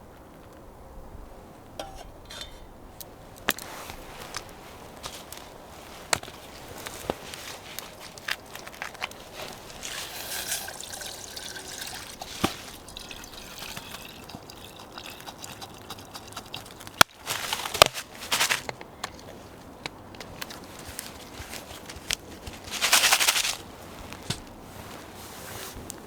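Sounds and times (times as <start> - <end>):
rustling and clatter: 1.8 - 14.3, 16.0 - 26.0
liquid pouring into a container: 9.6 - 17.0.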